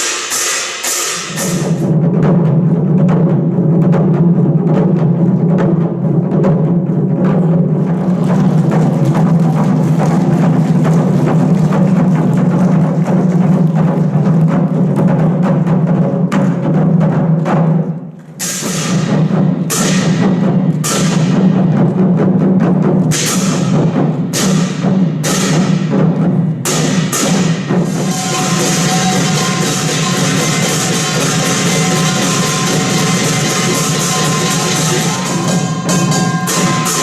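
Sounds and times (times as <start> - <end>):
ringing cymbal crash: 0.0 - 1.9, 26.7 - 37.0
percussion ensemble drumming: 0.0 - 37.0.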